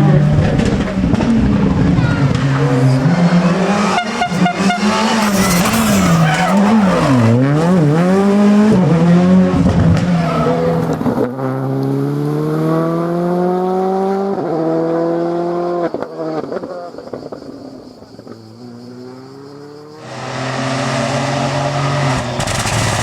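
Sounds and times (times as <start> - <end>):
rally car engine revving: 0.0 - 17.1, 19.0 - 23.0
sharp engine cracks: 22.4 - 23.0.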